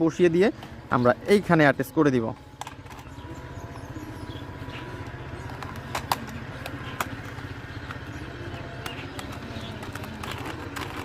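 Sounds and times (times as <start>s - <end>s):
steady low hum: 0.5s - 11.0s
plastic toy parts clicking: 8.8s - 11.0s.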